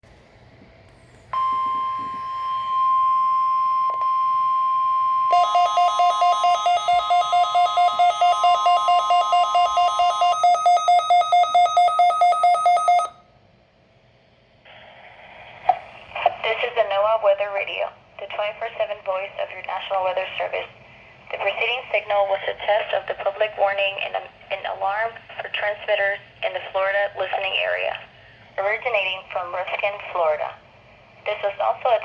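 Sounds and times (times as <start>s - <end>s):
fast alarm beeping: 1.4s - 13.2s
steady alert tone: 5.3s - 13.1s.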